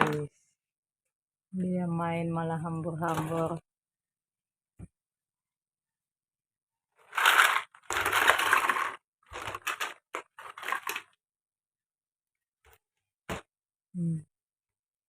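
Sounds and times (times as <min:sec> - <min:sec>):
plastic toys clattering: 0:03.0 - 0:03.6, 0:07.0 - 0:11.2.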